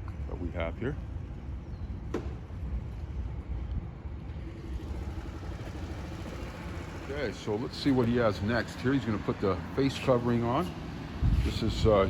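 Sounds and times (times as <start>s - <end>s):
scooter engine idling: 4.3s - 10.1s.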